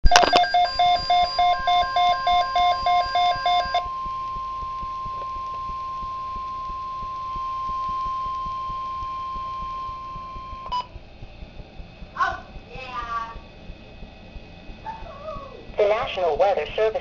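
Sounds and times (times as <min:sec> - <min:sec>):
rapid alarm beeps: 0:00.0 - 0:11.4
steady warning alarm tone: 0:00.0 - 0:17.0.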